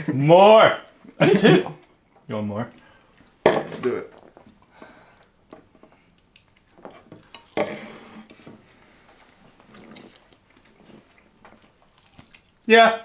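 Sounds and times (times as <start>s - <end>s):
plates and cutlery handling: 3.4s - 4.3s, 6.9s - 8.7s.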